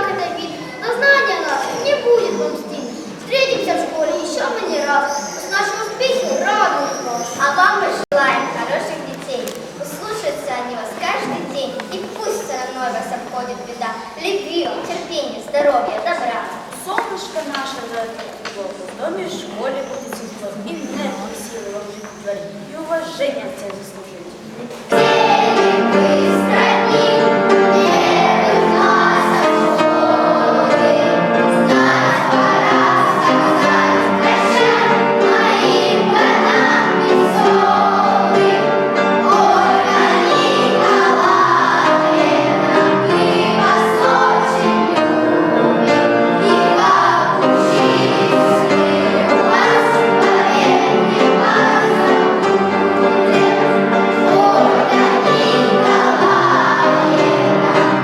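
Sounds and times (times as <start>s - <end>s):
children singing: 0.0s - 8.9s, 24.9s - 58.0s
musical accompaniment: 24.9s - 58.0s.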